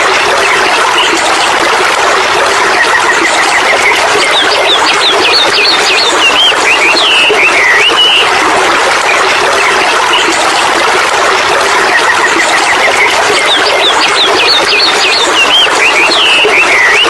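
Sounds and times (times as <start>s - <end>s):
water pouring down a cascade: 0.0s - 17.0s
songbird singing: 3.6s - 8.2s, 13.0s - 17.0s.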